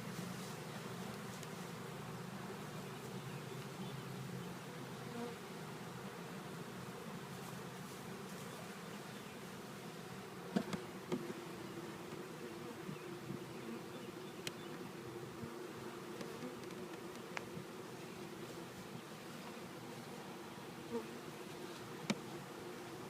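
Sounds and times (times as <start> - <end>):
honey bees buzzing: 0.0 - 23.0
light knocks on hive: 10.5 - 11.4.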